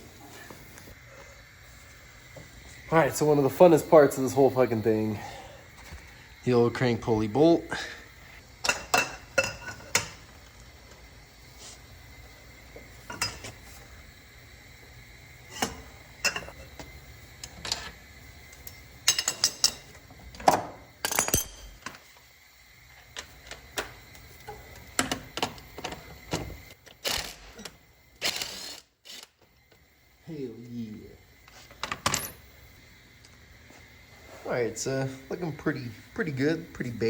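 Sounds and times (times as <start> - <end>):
metal tools and parts clinking: 19.0 - 22.0, 31.8 - 32.4.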